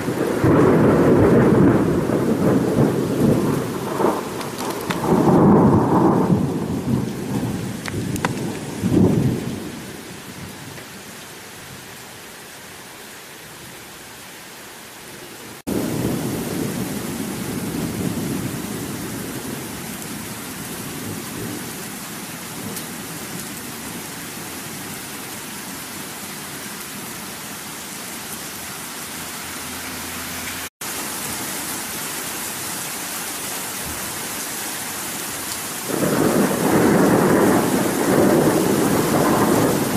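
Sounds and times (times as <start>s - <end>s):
thunder rumbling: 0.0s - 10.7s, 15.7s - 24.9s, 35.8s - 39.9s
rain falling steadily: 0.0s - 39.9s.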